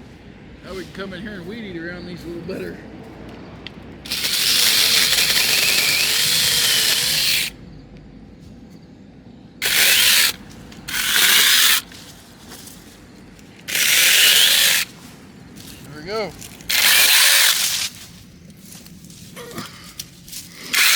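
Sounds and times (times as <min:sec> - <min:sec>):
mini chainsaw running: 0:04.1 - 0:07.6, 0:09.6 - 0:11.9, 0:13.7 - 0:14.9, 0:16.7 - 0:18.0, 0:20.6 - 0:20.9.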